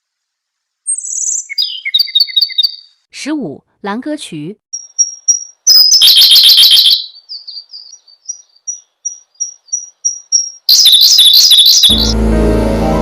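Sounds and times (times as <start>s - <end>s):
bird singing trills: 0.9s - 2.9s, 4.7s - 12.0s
music: 11.9s - 13.0s.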